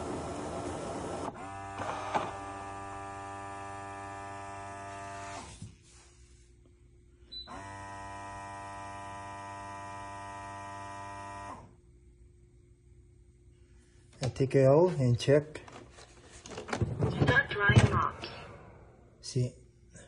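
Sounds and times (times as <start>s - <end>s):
electric motor whine: 0.0s - 5.5s, 7.5s - 11.7s.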